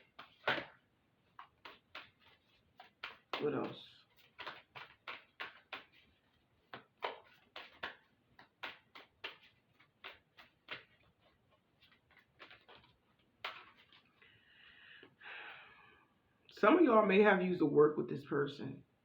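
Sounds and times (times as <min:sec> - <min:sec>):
cards being shuffled by hand: 0:00.0 - 0:14.4.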